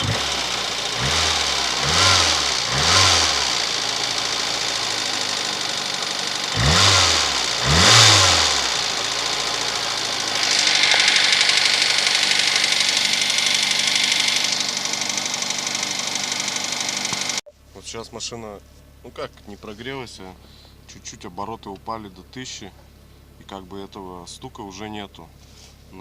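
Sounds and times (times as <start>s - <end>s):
car engine idling with ticking knock: 0.0s - 17.4s, 20.3s - 21.9s.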